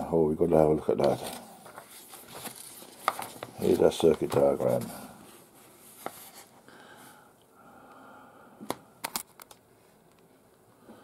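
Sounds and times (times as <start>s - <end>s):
paper crackles: 1.0s - 5.0s
paper rustling: 1.0s - 6.6s.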